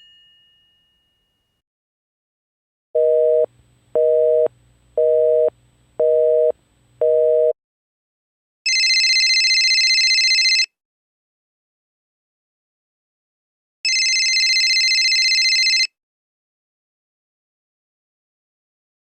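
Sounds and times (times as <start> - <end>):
telephone busy signal beeps: 3.0 - 7.6
trilling electronic telephone ring: 8.7 - 10.7, 13.9 - 15.9.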